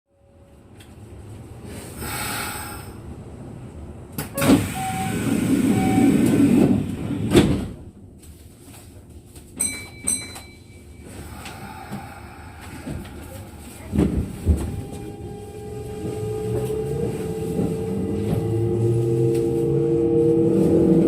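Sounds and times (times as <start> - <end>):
sliding doors rushing: 4.3 - 7.8, 12.0 - 21.0.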